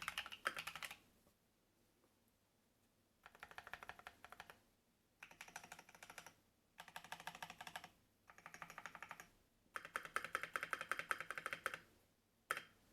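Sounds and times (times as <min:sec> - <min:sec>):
typing on mechanical keyboard: 0:00.0 - 0:01.0, 0:03.2 - 0:04.6, 0:05.2 - 0:11.9, 0:12.5 - 0:12.8.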